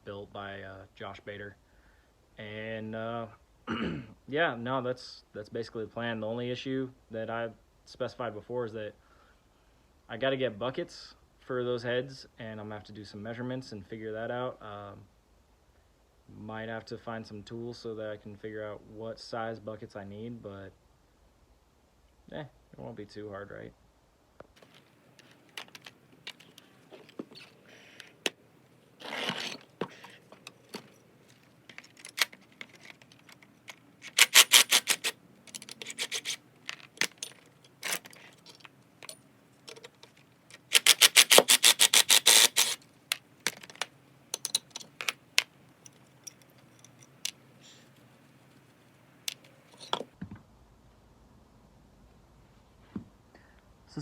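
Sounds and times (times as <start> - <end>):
metal tools clinking and scraping: 29.0 - 41.0, 43.5 - 45.2, 45.8 - 47.4, 49.4 - 50.2
ratchet wrench clicking: 34.0 - 35.1, 35.7 - 36.4, 40.6 - 42.8.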